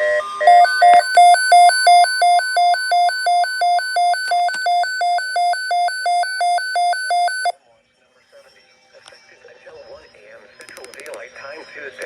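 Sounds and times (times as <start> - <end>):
electronic two-tone alarm: 0.0 - 7.6.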